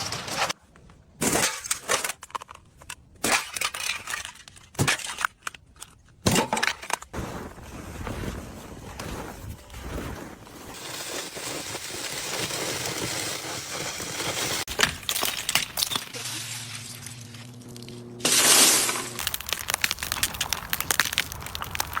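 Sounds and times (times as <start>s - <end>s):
ice cracking: 6.5s - 22.0s
ice hissing scrape: 7.2s - 14.8s, 18.2s - 19.3s.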